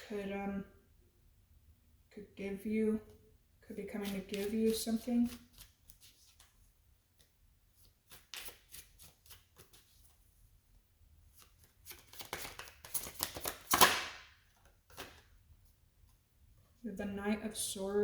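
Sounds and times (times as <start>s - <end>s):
cards being shuffled: 4.0s - 6.6s, 7.2s - 10.2s, 11.3s - 15.3s.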